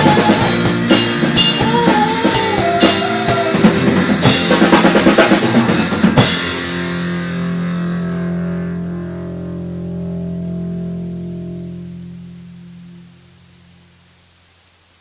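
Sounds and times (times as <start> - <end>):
drum fill: 0.0 - 8.6
rock band playing: 0.0 - 11.1
held low chord ringing: 5.9 - 14.0.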